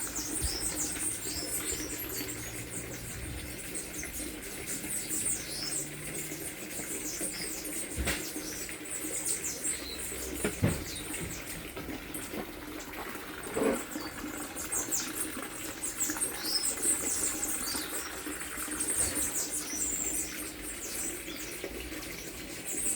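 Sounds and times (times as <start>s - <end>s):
small birds chirping: 0.0s - 11.8s, 13.6s - 22.9s.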